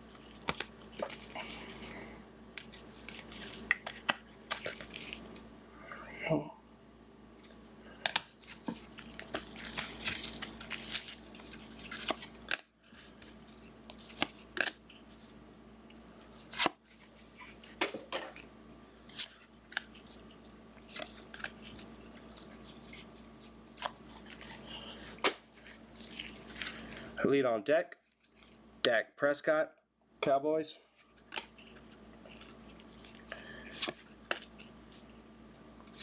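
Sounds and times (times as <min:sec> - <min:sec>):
cards and wrappers rustling: 0:00.0 - 0:05.5, 0:07.4 - 0:18.4, 0:19.0 - 0:27.2, 0:31.0 - 0:36.0
faint steady hum: 0:00.0 - 0:36.0.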